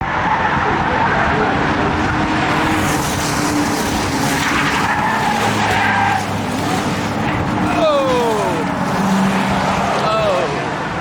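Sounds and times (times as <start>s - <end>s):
race car engines: 0.0s - 11.0s
tyre noise: 1.9s - 10.8s.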